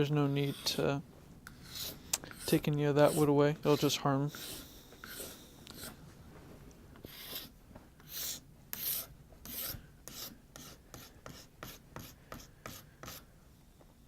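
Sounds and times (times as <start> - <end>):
knife scraping wood: 1.5 - 6.0, 7.1 - 7.5, 8.1 - 13.2.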